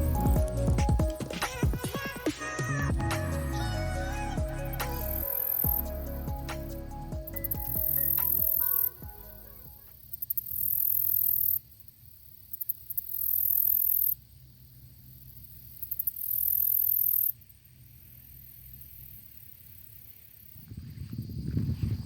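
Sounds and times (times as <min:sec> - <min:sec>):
background music: 0:00.0 - 0:09.9
insect high-pitched buzzing calls: 0:03.4 - 0:14.5, 0:15.2 - 0:21.4.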